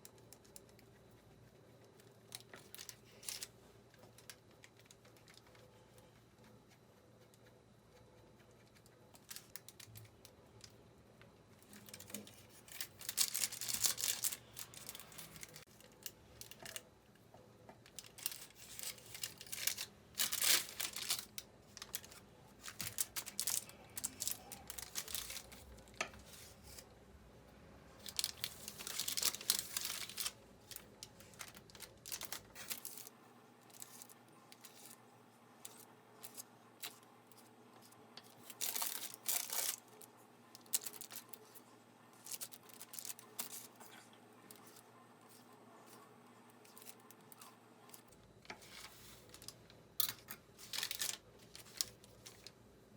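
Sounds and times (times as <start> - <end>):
packaging crinkling and tearing: 2.3 - 3.5, 11.6 - 16.8, 17.9 - 26.9, 28.0 - 33.1, 38.3 - 41.5, 42.2 - 43.7, 50.6 - 52.5.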